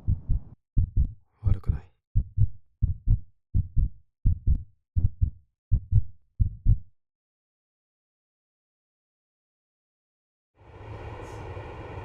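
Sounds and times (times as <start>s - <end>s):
heartbeat thumps: 0.0s - 6.9s.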